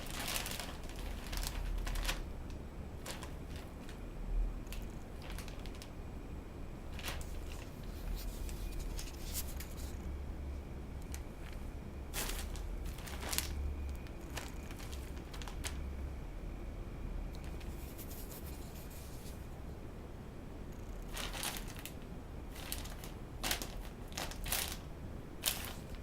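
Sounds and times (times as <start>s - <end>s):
low steady rumble: 0.0s - 26.0s
kitten scratching in a basket: 3.0s - 4.0s, 7.0s - 10.1s, 12.2s - 15.8s, 17.4s - 19.5s, 21.0s - 26.0s.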